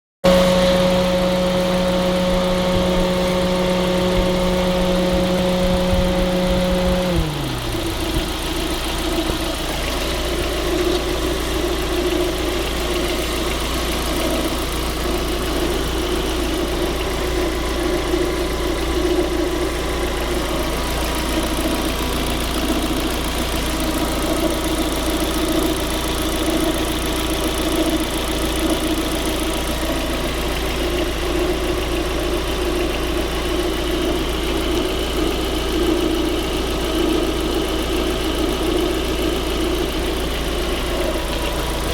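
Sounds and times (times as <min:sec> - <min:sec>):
car engine idling: 0:00.2 - 0:41.9.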